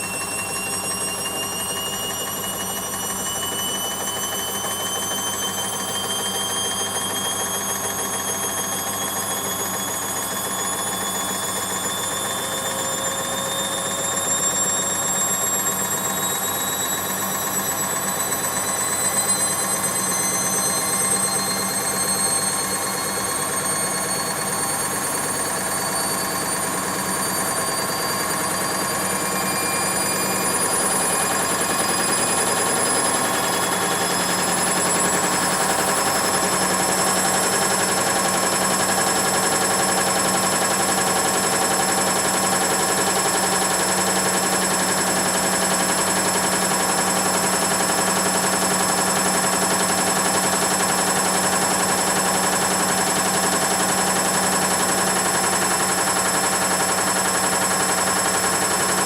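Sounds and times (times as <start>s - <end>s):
washing machine motor whine: 0.0s - 59.0s.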